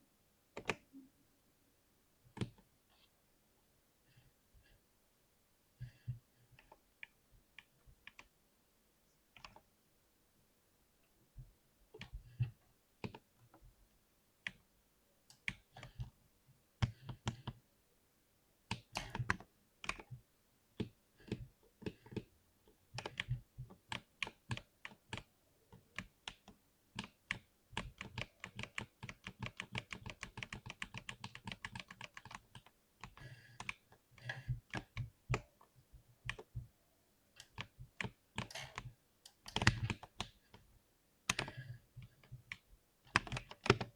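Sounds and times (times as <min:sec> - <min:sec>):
typing on keyboard: 0:18.7 - 0:20.2, 0:22.9 - 0:33.8, 0:34.4 - 0:35.6, 0:37.4 - 0:40.6, 0:41.3 - 0:43.9.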